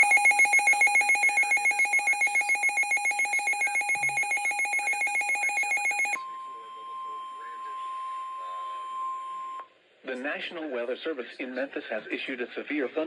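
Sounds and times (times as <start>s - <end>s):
shrill pulsing electronic alarm: 0.0s - 8.2s.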